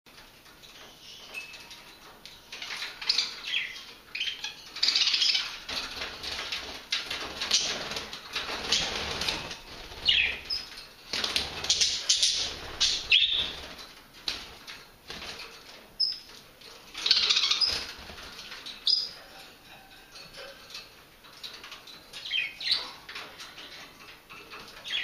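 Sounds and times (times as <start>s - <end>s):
wing flapping and scuffling: 5.5s - 18.9s.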